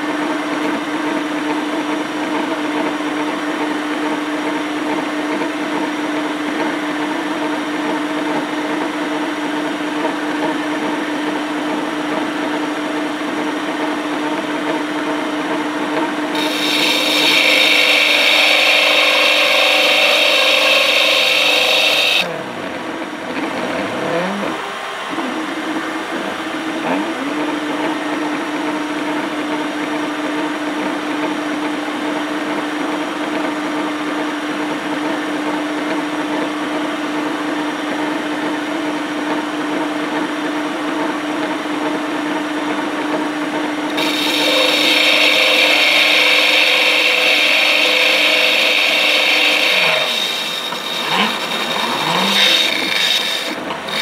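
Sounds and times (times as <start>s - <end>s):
milling machine humming: 16.1s - 23.5s, 43.9s - 54.0s
high-pitched metal cutting: 16.3s - 22.4s, 43.9s - 54.0s.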